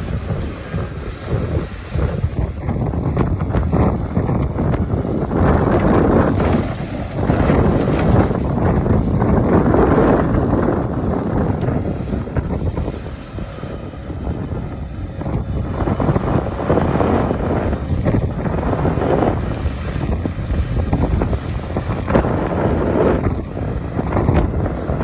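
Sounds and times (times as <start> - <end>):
wind on microphone: 0.0 - 25.0
excavator engine rumble: 0.2 - 18.4
excavator scraping rock: 5.7 - 9.1.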